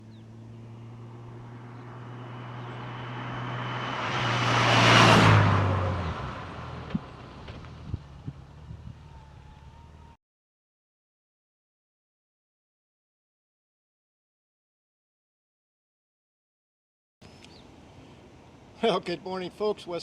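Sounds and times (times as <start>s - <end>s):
motor vehicle passing by: 0.0s - 10.2s.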